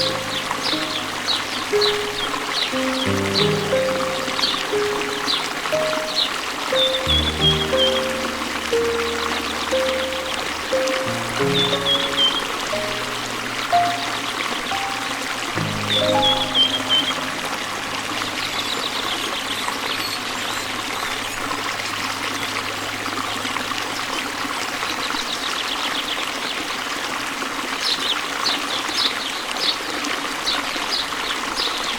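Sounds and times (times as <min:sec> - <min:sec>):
small birds chirping: 0:00.0 - 0:21.5
stream water trickling: 0:00.0 - 0:31.9.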